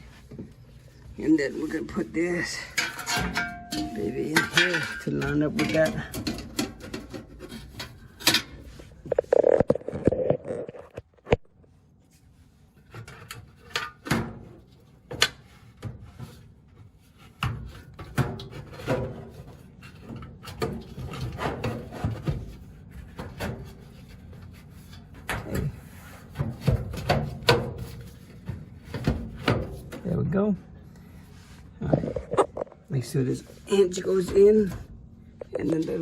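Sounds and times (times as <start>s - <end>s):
rubbing and scraping: 0.0s - 11.4s
clicks and knocks of parts: 2.7s - 11.4s.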